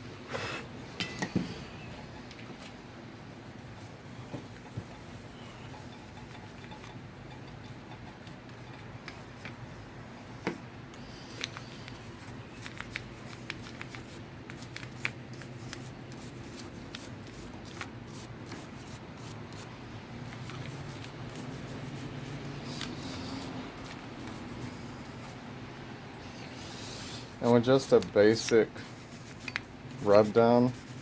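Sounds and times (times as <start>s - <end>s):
steady low hum: 0.0s - 31.0s
scratchy scrubbing on metal: 26.6s - 31.0s.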